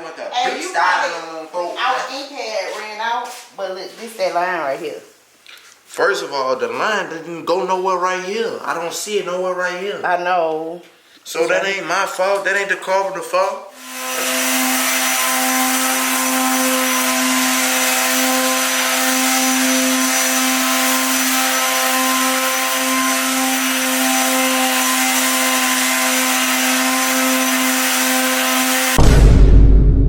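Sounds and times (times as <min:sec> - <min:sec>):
loud low booming: 0:29.0 - 0:30.0.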